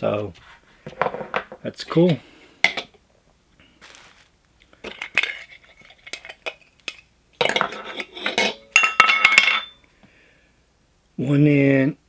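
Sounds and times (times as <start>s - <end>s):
tin cans clattering and scraping: 4.8s - 9.7s
metal cans clinking: 4.8s - 9.8s
metallic ringing: 7.5s - 9.9s.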